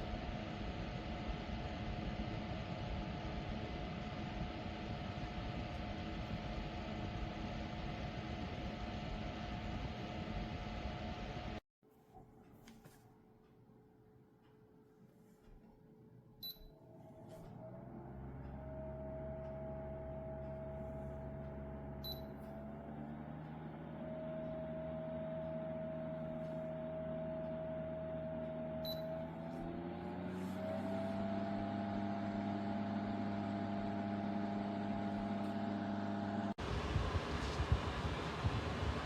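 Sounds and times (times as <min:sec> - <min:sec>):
motor humming: 0:16.4 - 0:39.0
rough noisy motor sound: 0:16.9 - 0:39.0.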